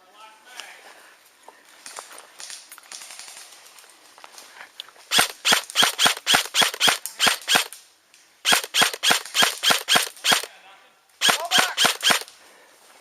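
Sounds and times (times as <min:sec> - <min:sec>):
airsoft gun firing single shots: 0:05.1 - 0:07.8, 0:08.4 - 0:10.5, 0:11.2 - 0:12.3.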